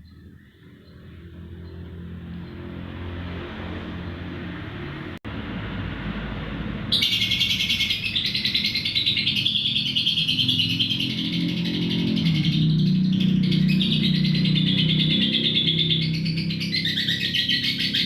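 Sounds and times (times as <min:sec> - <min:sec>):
lovebird chattering trill: 0:06.9 - 0:18.0.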